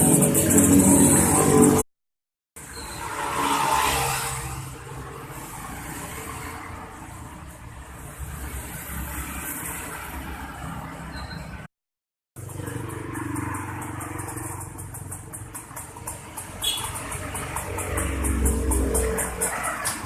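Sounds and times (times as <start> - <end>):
motorcycle passing by: 0.0 - 1.8, 2.7 - 6.9, 12.4 - 20.0.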